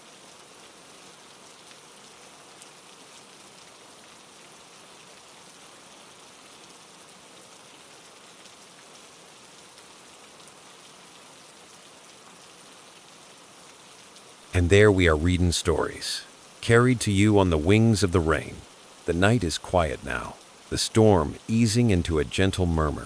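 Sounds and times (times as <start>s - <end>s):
steady rain hiss: 0.0s - 23.0s
raindrop patter: 13.7s - 23.0s.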